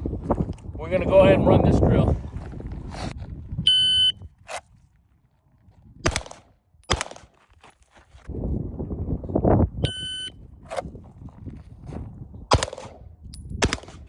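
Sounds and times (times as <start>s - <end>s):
shot timer beep: 9.8s - 10.4s.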